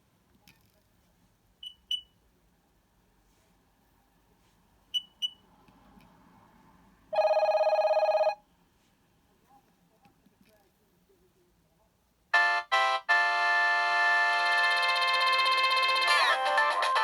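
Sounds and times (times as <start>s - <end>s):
phone key beeps: 5.0s - 5.4s.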